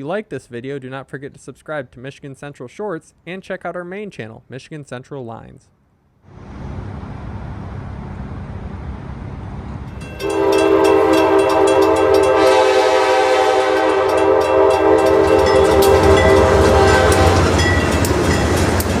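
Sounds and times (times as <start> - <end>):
train rumbling: 6.3 - 19.0
train horn chord: 9.9 - 17.8
wheels clicking over rails: 13.9 - 19.0.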